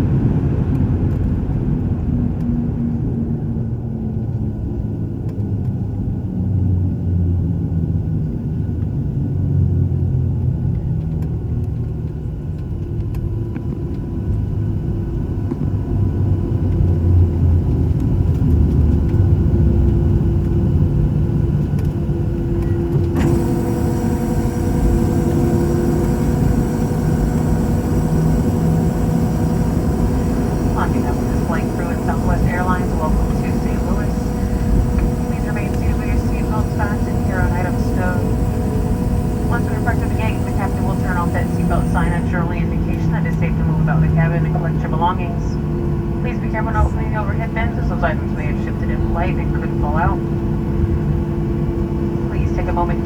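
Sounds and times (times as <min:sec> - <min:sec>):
aircraft cabin engine rumble: 0:12.1 - 0:53.0
high whining tones: 0:22.6 - 0:44.4
faint steady tones: 0:22.6 - 0:45.6.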